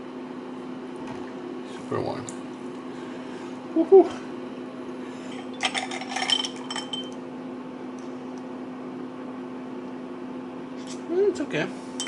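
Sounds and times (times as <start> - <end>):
steady low hum: 0.0 - 12.0
small metal parts clinking: 5.6 - 7.2.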